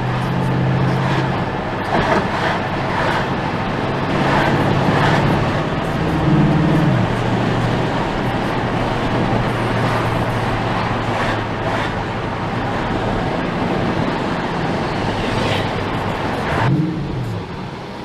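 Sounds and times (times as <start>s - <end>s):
car engine revving while driving: 0.0s - 18.0s
road noise: 0.0s - 18.0s.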